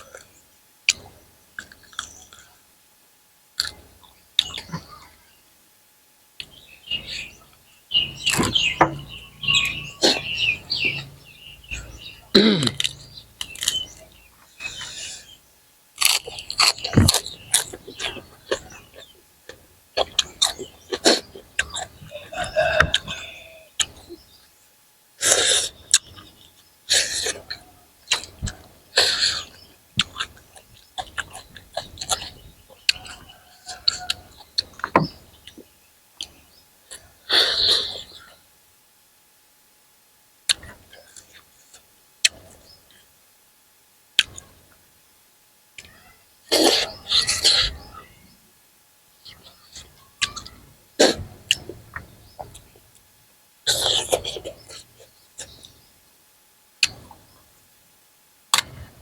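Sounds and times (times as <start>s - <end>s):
person chewing food: 12.6s - 14.1s, 16.0s - 18.7s
hissing mouth sounds: 25.2s - 25.8s, 53.7s - 55.6s.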